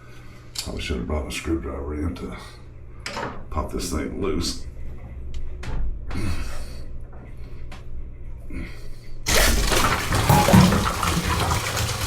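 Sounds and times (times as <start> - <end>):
water rushing and splashing: 9.3 - 12.0.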